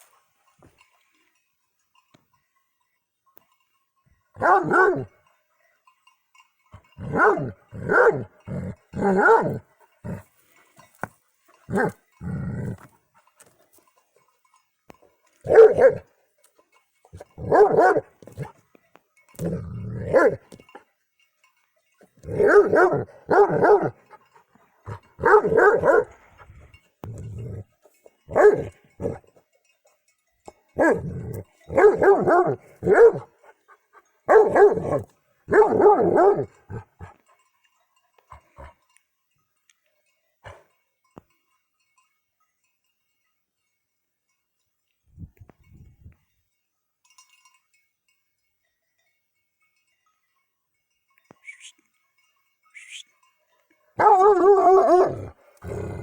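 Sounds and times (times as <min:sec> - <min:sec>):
dog barking: 0:04.4 - 0:05.1, 0:07.0 - 0:08.3, 0:09.0 - 0:09.6, 0:11.7 - 0:12.0, 0:15.4 - 0:16.1, 0:17.4 - 0:18.5, 0:20.0 - 0:20.4, 0:22.3 - 0:24.0, 0:24.9 - 0:26.2, 0:28.3 - 0:29.2, 0:30.8 - 0:33.4, 0:34.3 - 0:36.6, 0:54.0 - 0:55.4.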